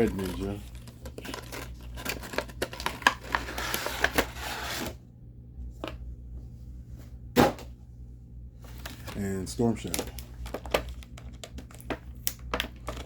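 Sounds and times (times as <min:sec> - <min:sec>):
plastic packaging clicks and rustling: 0:00.0 - 0:04.4, 0:08.7 - 0:13.0.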